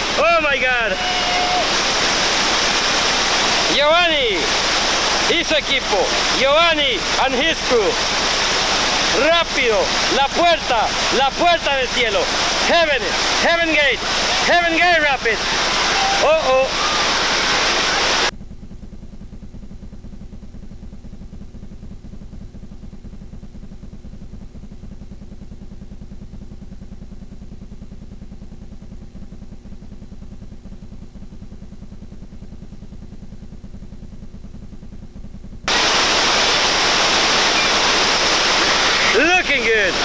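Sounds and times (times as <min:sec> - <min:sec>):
whitewater rapids rushing: 0:00.0 - 0:18.3, 0:35.7 - 0:40.0.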